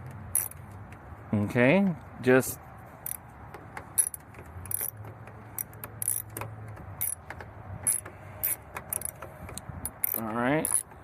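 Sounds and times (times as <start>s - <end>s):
small metallic clicks and rattles: 0.0s - 1.1s, 3.0s - 11.0s.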